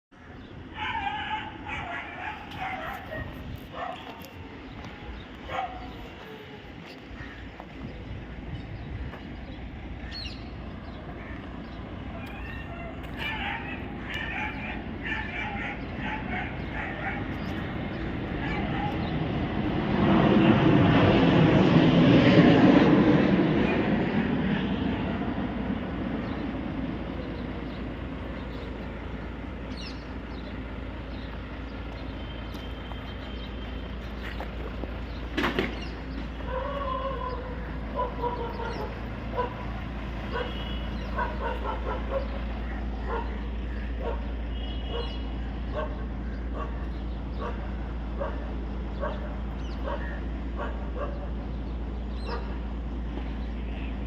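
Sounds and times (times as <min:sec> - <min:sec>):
low engine drone: 0:00.1 - 0:54.0
dog barking and yipping: 0:00.8 - 0:04.3, 0:05.5 - 0:06.0, 0:12.2 - 0:17.4, 0:18.4 - 0:19.1, 0:36.4 - 0:39.7, 0:40.3 - 0:44.3, 0:44.9 - 0:46.8, 0:47.4 - 0:51.4.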